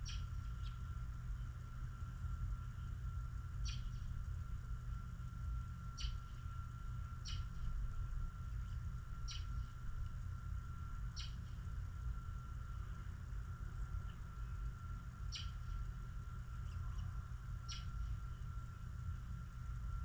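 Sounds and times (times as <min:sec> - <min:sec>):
small songbird chirping: 0:00.0 - 0:01.6, 0:03.6 - 0:04.1, 0:05.8 - 0:09.8, 0:11.0 - 0:11.7, 0:13.8 - 0:20.0
faint steady high tone: 0:00.0 - 0:20.0
steady low rumble: 0:00.0 - 0:20.0.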